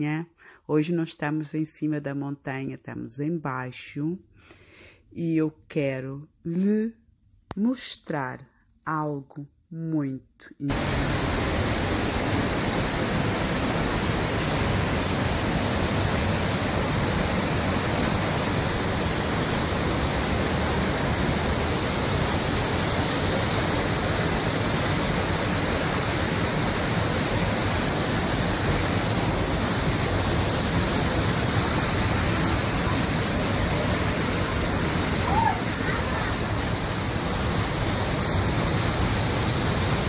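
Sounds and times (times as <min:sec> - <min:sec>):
waterfall rushing: 0:10.7 - 0:40.0.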